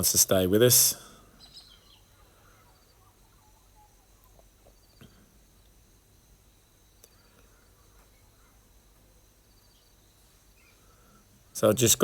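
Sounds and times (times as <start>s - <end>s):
faint high chirps: 0.9s - 5.7s.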